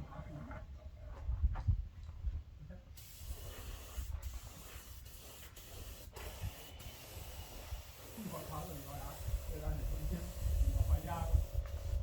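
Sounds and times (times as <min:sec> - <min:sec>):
paint spray hissing: 0:03.0 - 0:12.0.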